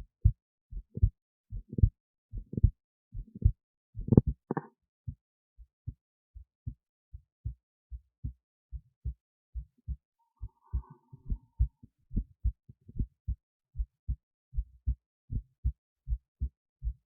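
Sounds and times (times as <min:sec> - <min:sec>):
heartbeat through stethoscope: 0:00.0 - 0:05.2, 0:05.8 - 0:17.0.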